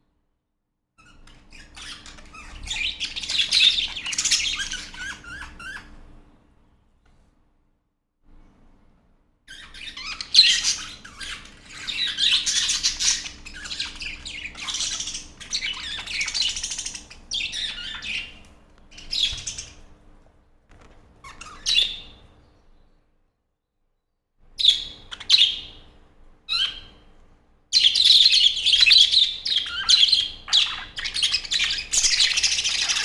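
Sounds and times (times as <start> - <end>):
budgerigars chirping: 1.0 - 5.9, 9.5 - 19.8, 21.2 - 22.2, 24.6 - 25.8, 27.8 - 33.0.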